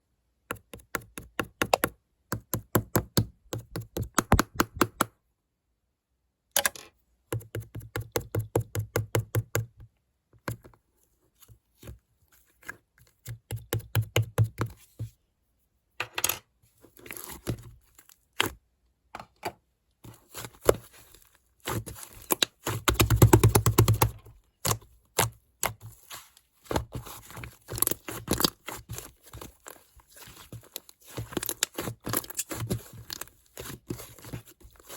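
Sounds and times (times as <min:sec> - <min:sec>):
clay slime clicking and popping: 0:22.3 - 0:25.8.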